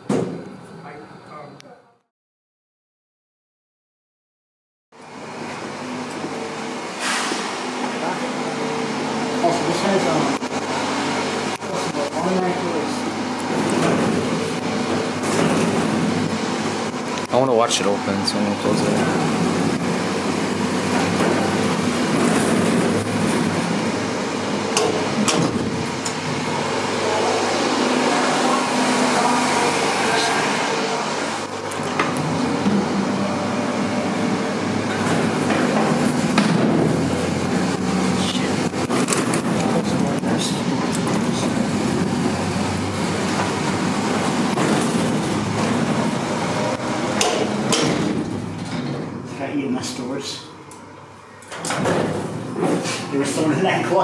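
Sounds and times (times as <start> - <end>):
elevator humming and rumbling: 5.0 - 54.0.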